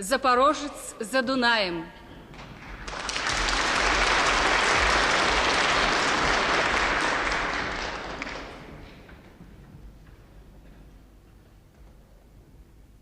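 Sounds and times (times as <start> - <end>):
audience applauding: 2.6 - 9.1.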